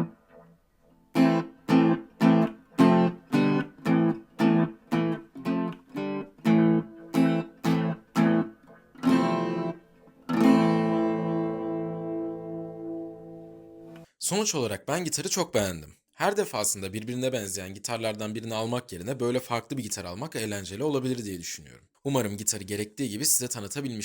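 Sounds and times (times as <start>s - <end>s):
acoustic guitar strummed chords: 1.1s - 14.0s.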